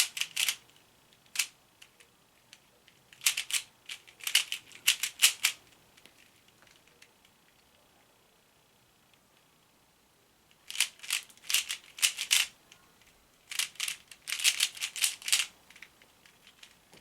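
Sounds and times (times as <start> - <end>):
puzzle cube clicking turns: 0.0 - 7.0, 10.6 - 12.6, 13.5 - 16.8.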